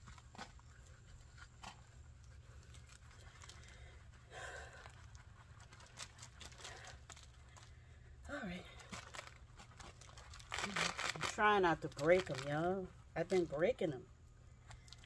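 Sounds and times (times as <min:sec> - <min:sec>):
person breathing heavily: 0:03.5 - 0:05.1.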